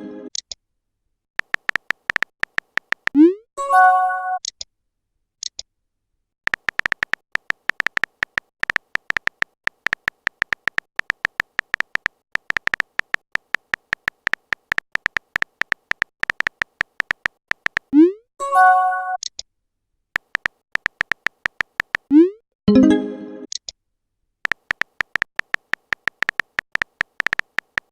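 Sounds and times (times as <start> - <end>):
rapid keyboard typing: 1.4 - 3.2, 6.5 - 18.0, 20.2 - 22.1, 24.4 - 27.9.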